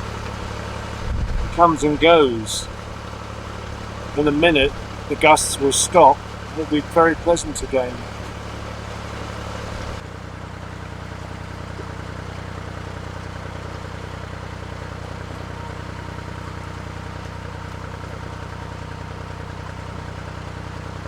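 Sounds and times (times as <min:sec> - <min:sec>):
boat engine humming: 0:00.0 - 0:21.0.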